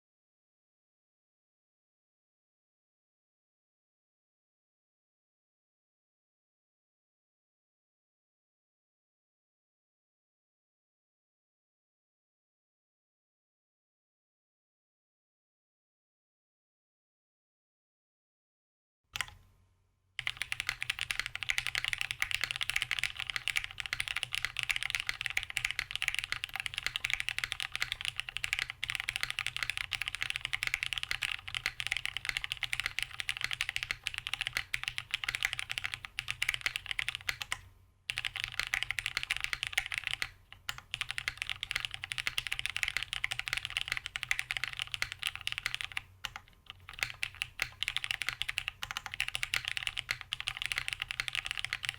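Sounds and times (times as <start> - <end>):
mechanical keyboard typing: 19.2 - 19.4, 20.2 - 51.9.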